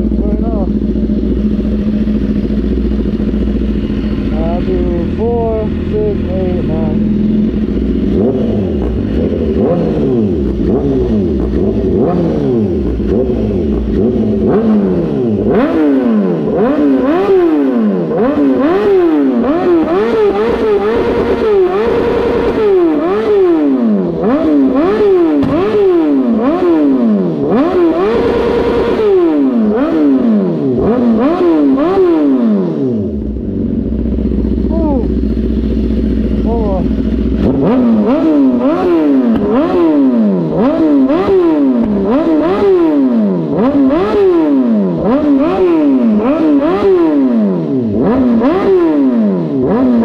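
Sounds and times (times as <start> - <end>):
motorcycle engine revving: 0.0 - 50.0.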